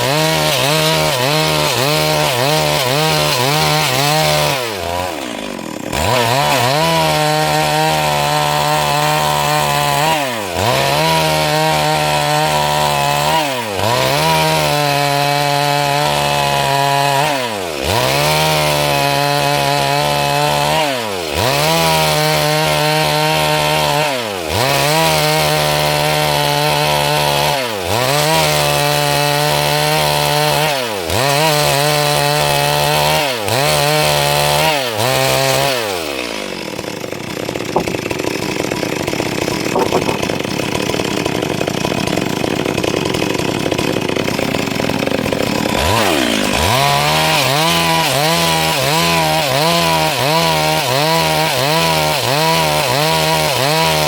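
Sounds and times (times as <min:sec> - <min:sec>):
chainsaw cutting log at high revs: 0:00.0 - 0:54.0.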